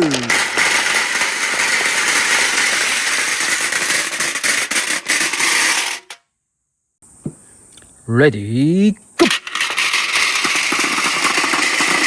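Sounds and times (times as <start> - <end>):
marbles rattling down a track: 0.0 - 6.2, 9.2 - 12.0.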